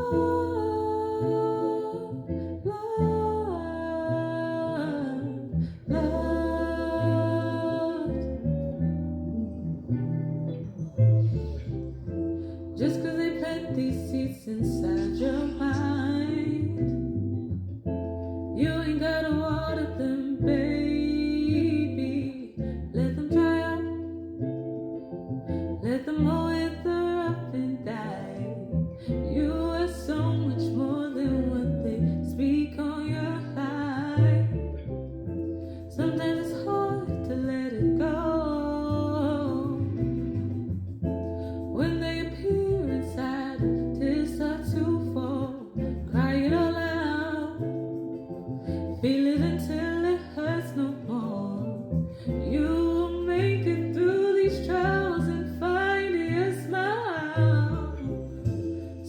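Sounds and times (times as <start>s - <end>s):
person singing: 0.0s - 10.0s, 12.4s - 17.2s, 35.8s - 40.6s
bass line: 0.0s - 59.0s
plucked guitar: 0.0s - 59.0s.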